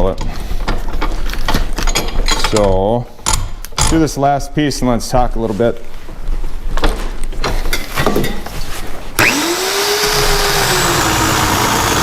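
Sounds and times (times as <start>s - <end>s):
handling knocks and clicks: 0.0s - 4.2s
electric chainsaw motor whine: 9.2s - 12.0s.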